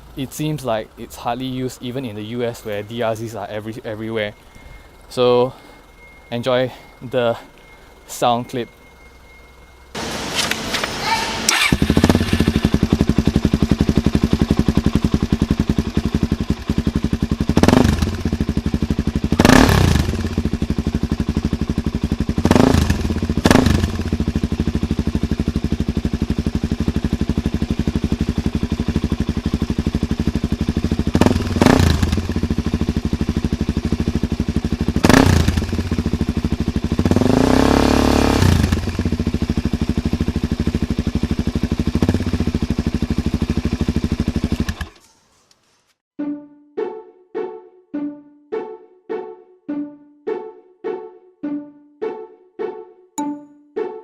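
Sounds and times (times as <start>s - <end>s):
motorcycle engine idling: 0.0s - 10.1s, 11.5s - 45.0s
throttle blips: 53.2s - 53.7s.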